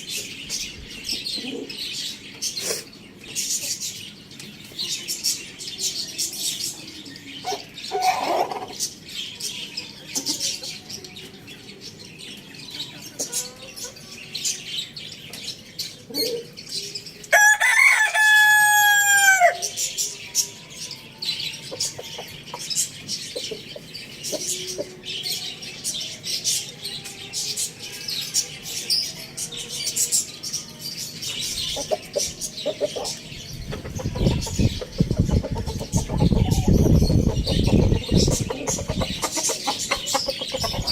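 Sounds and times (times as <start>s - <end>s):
small birds chirping: 0.0s - 40.9s
chicken clucks: 1.1s - 1.8s, 10.0s - 11.4s, 21.5s - 25.1s, 31.5s - 40.9s
rooster crowing: 17.3s - 19.7s.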